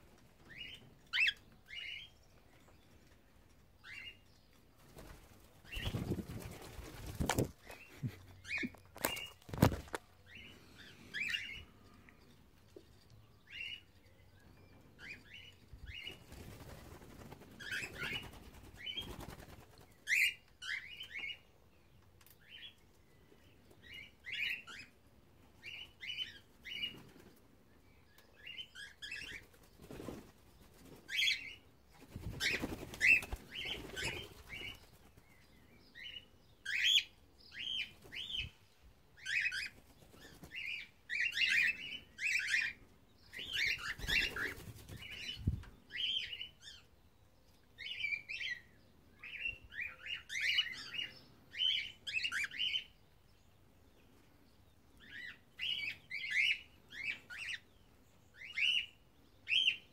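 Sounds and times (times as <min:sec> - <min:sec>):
wings flapping: 0:04.8 - 0:10.0, 0:16.0 - 0:20.1, 0:29.2 - 0:31.4, 0:32.0 - 0:35.2, 0:43.6 - 0:45.6.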